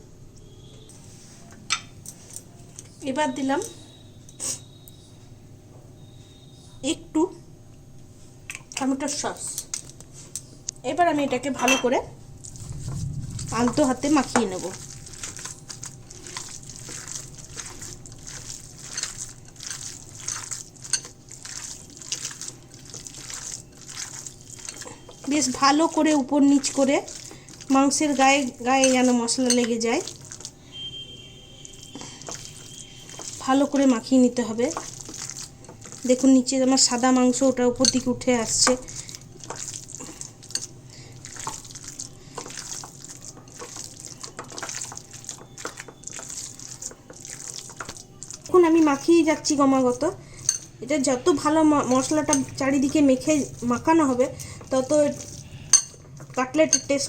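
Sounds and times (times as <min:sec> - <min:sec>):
hands squelching wet mince: 0:12.4 - 0:57.0.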